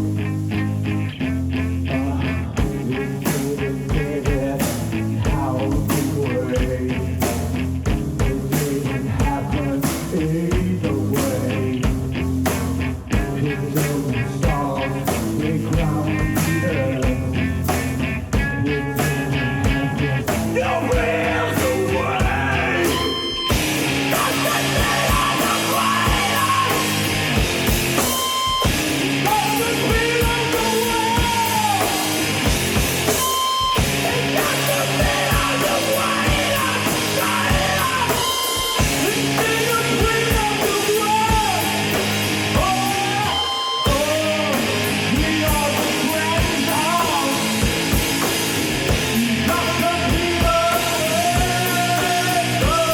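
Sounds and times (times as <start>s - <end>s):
electric guitar: 0.0s - 52.9s
person singing and yelling: 1.9s - 7.4s, 18.4s - 47.9s, 48.9s - 52.9s
drum kit: 2.6s - 52.9s.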